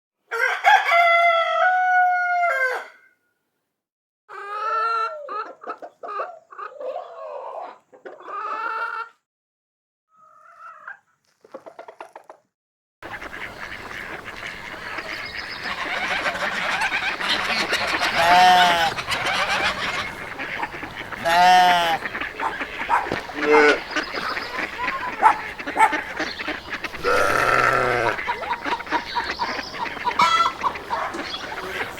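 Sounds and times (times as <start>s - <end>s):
flock of chickens calling: 0.3s - 3.1s, 4.3s - 9.2s, 13.0s - 31.9s
rooster crowing: 0.3s - 3.1s, 18.2s - 19.9s
hens clucking: 4.3s - 9.2s, 10.2s - 12.4s, 13.0s - 31.9s.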